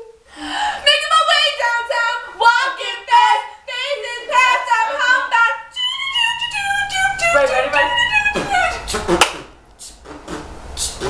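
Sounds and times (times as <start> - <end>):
girl singing: 0.8 - 9.0.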